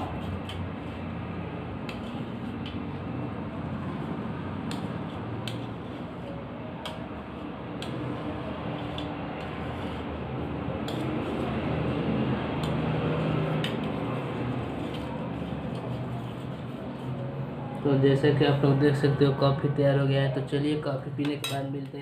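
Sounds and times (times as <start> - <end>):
steady background noise: 0.0 - 22.0.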